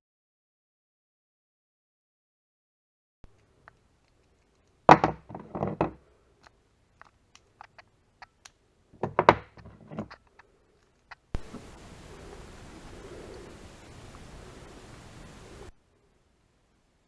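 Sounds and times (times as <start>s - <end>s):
plastic parts clattering: 4.9s - 6.0s, 9.0s - 11.1s.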